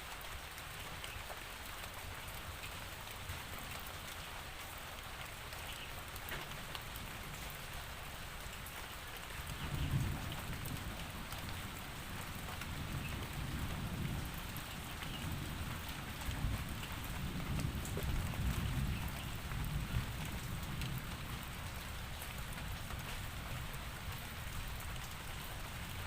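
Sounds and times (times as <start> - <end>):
rain drops pattering: 0.0 - 26.0
steady rain falling: 0.0 - 26.0
thunder rumbling: 9.5 - 21.8.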